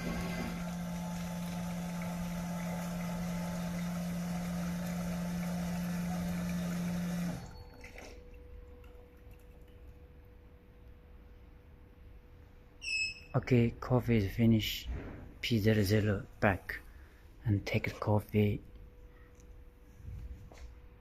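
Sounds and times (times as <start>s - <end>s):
motor humming: 0.0s - 7.5s
liquid rushing into cup: 0.0s - 8.3s.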